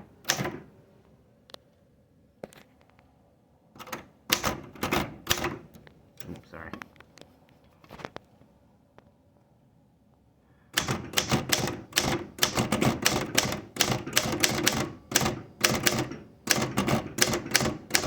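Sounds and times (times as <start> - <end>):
typewriter keys clacking: 3.8 - 5.6, 10.8 - 18.0.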